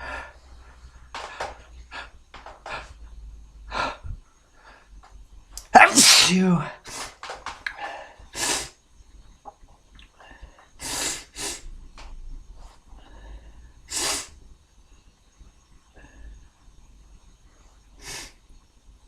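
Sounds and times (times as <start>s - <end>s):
nasal breaths: 0.0s - 5.0s
man sneezing: 5.6s - 7.2s.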